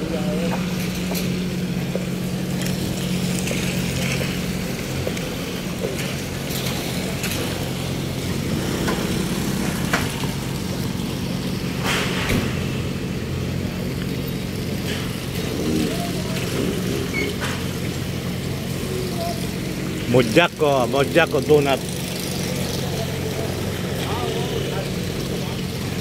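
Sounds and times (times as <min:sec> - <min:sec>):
motor engine humming: 0:00.0 - 0:26.0
knocks and clanks: 0:11.7 - 0:12.9.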